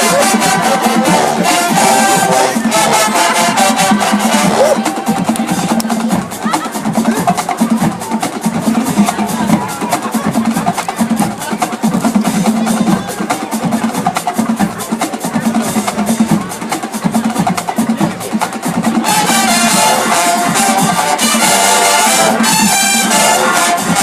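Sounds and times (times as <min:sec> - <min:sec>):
brass section playing: 0:00.0 - 0:07.1, 0:19.0 - 0:24.0
snare and bass drums: 0:00.0 - 0:24.0.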